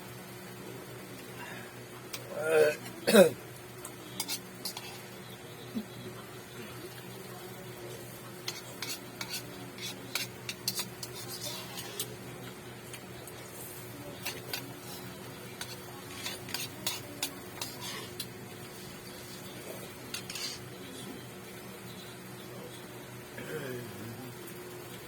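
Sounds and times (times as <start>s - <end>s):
cutlery clinking and scraping dish: 4.2s - 5.1s, 8.4s - 12.2s, 14.2s - 18.8s, 20.1s - 20.7s.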